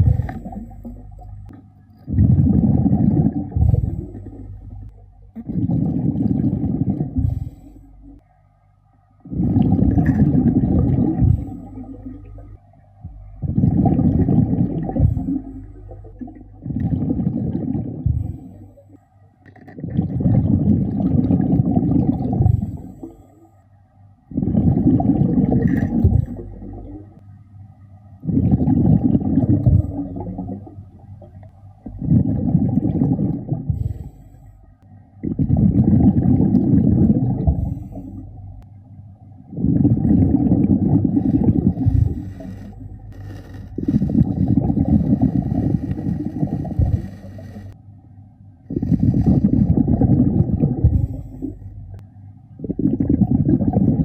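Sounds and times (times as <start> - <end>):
diver exhaling bubbles: 0.0 - 8.2, 9.3 - 18.7, 19.6 - 23.2, 24.3 - 27.2, 28.2 - 34.2, 35.2 - 38.4, 39.5 - 47.8, 48.7 - 52.0, 52.6 - 54.0
regulator inhalations: 41.2 - 47.8, 48.7 - 49.8.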